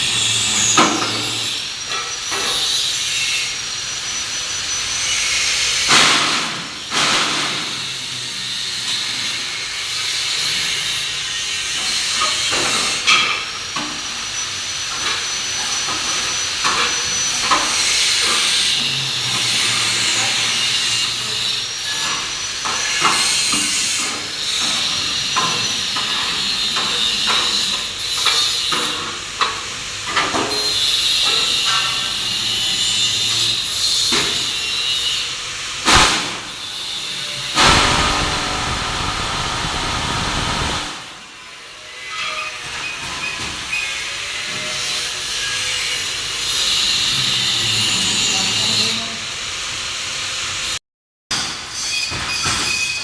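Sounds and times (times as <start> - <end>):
vibrator motor whining and rattling: 37.6 - 41.1.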